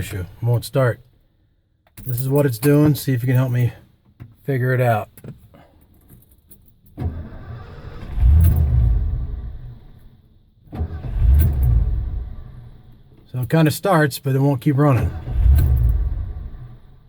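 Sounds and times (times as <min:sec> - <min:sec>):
car engine cranking and dying: 0:06.9 - 0:13.7, 0:14.8 - 0:17.0.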